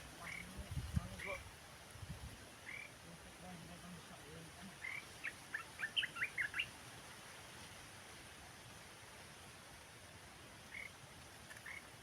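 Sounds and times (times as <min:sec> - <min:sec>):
faint outdoor background: 0:00.0 - 0:12.0
bird chirping: 0:04.8 - 0:06.7.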